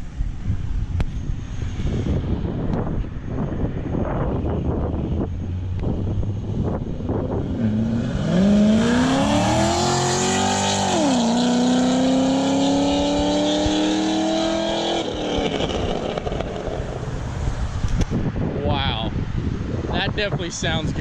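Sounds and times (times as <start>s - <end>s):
car engine accelerating past: 5.5s - 17.8s.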